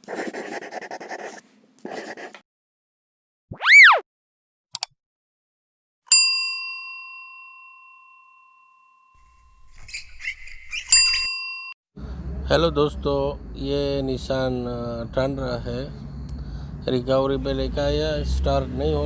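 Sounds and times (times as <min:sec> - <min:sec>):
swooping tone: 0:03.5 - 0:04.0
bell-like ding: 0:06.1 - 0:09.4, 0:11.0 - 0:11.8.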